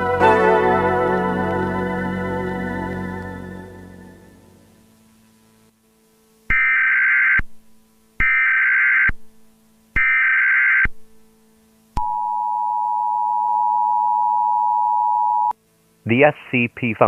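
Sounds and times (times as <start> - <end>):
screechy data bursts: 6.5 - 7.5, 8.2 - 9.2, 10.0 - 11.0.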